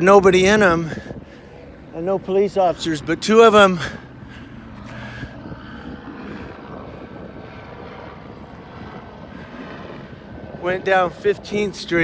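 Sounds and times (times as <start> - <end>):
helicopter drone overhead: 0.0 - 12.0.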